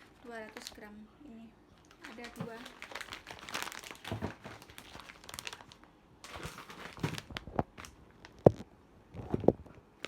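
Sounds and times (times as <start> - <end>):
packaging crinkling: 1.8 - 8.6.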